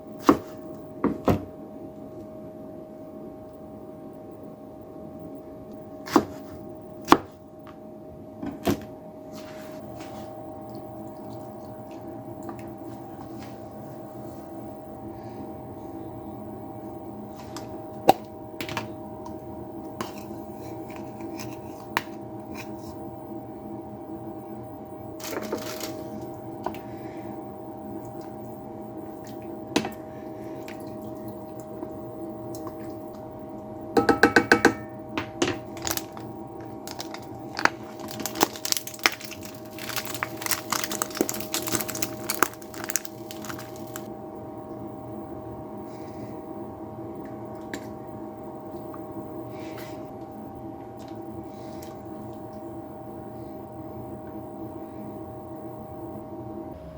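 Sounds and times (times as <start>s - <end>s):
steady hum: 0.0s - 56.9s.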